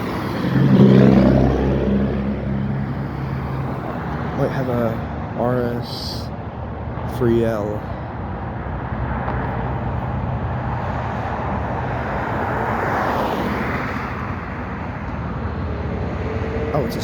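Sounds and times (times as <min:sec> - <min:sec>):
diesel locomotive engine rumble: 0:00.0 - 0:12.5.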